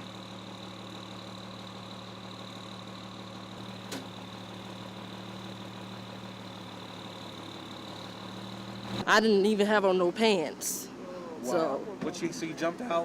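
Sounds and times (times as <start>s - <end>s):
engine idling: 0.0s - 9.1s.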